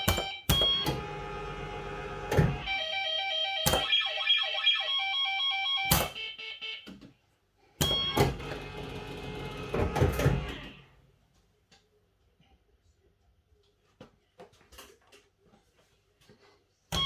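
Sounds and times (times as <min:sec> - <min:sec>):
fruit machine electronic bleeps: 0:00.0 - 0:01.0, 0:02.6 - 0:06.8, 0:07.8 - 0:08.4.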